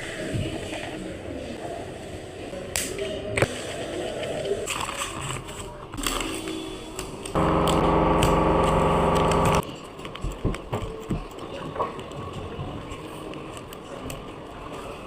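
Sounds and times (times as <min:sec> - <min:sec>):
steady electric buzz: 0:07.4 - 0:09.6.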